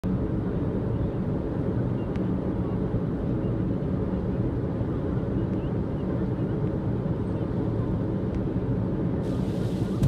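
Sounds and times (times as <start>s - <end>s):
road and tyre noise in rain: 9.0s - 10.0s.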